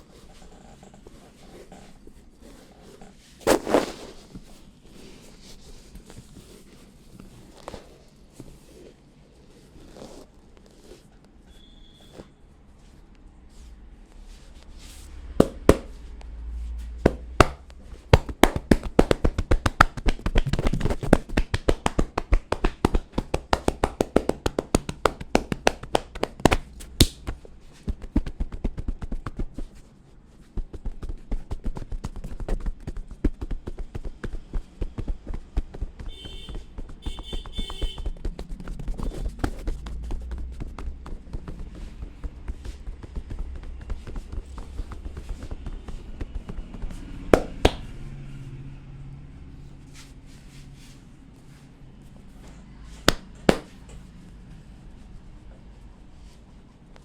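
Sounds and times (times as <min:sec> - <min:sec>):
short high squeaks: 0:11.5 - 0:12.4
fast tapping and clicking: 0:17.0 - 0:29.7, 0:30.6 - 0:47.9.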